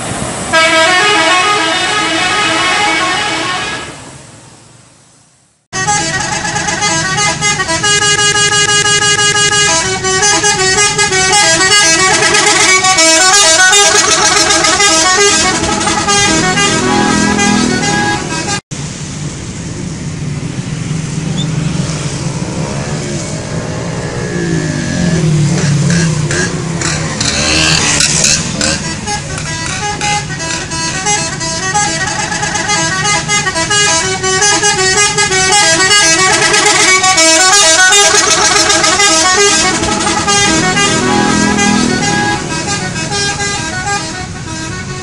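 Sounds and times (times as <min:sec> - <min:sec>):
musical air horn tune: 0:00.5 - 0:04.0, 0:05.8 - 0:18.6, 0:27.3 - 0:45.0
vehicle noise with sliding pitches: 0:06.0 - 0:45.0.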